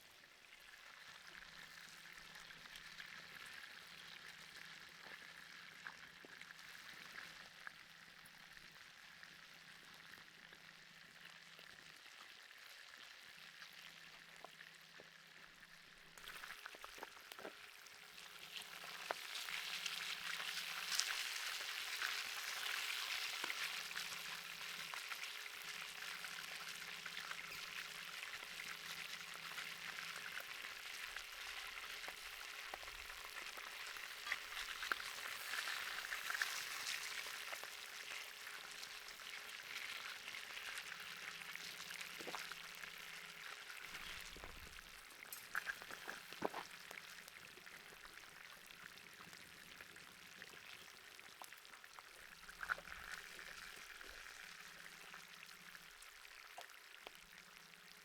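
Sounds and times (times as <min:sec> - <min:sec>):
food sizzling: 0:11.6 - 0:57.4
pops and crackles: 0:16.1 - 0:17.7, 0:31.1 - 0:38.3, 0:42.0 - 0:42.6, 0:43.8 - 0:48.2, 0:52.2 - 0:54.3.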